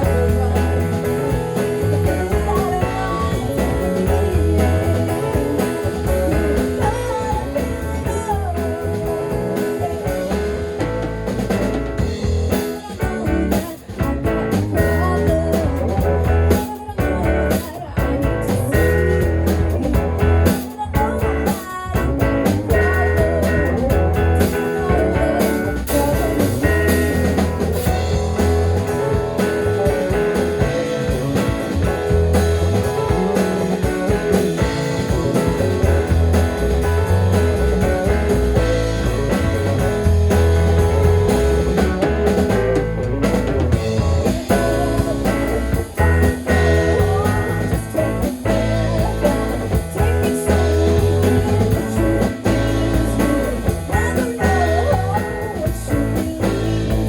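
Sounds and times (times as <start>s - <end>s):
blues-rock band playing: 0.0s - 57.0s
electric guitar: 0.0s - 57.0s.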